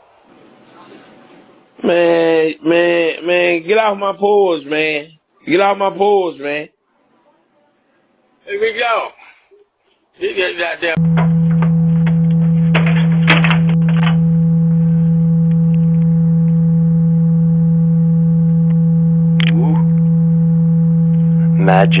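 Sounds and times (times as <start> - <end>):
low electronic hum: 11.0 - 22.0.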